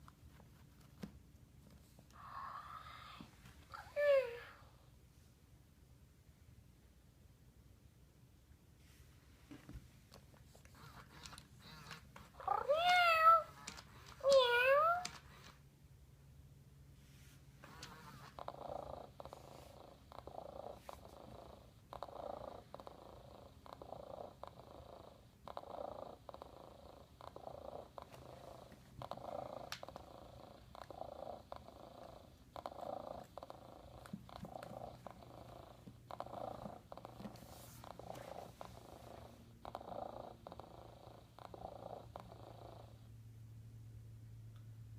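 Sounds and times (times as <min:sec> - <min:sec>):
robotic cat purring: 0:10.6 - 0:15.6, 0:17.6 - 0:43.1.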